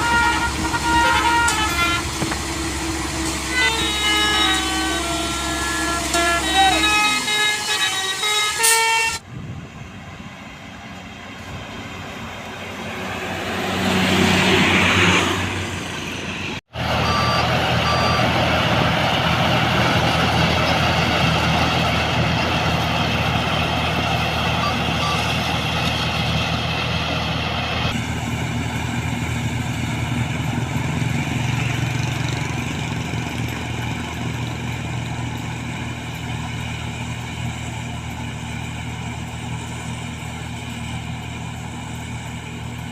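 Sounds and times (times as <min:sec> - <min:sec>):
horn tones: 0:00.0 - 0:09.3
heavy vehicle engines running: 0:00.0 - 0:42.9
faint reversing beeps: 0:17.0 - 0:18.4, 0:24.5 - 0:25.5.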